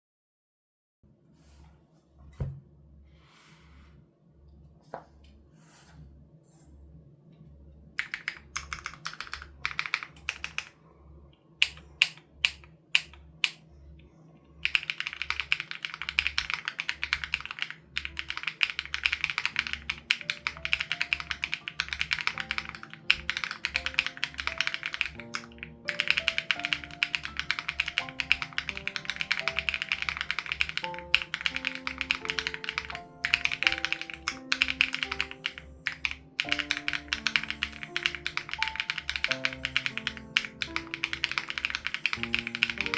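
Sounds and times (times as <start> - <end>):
mechanical keyboard typing: 8.0 - 10.8, 11.6 - 13.6, 14.6 - 42.9
background music: 16.1 - 42.9.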